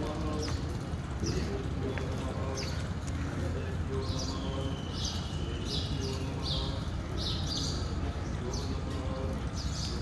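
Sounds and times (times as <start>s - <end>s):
bird chirping: 4.0s - 8.8s.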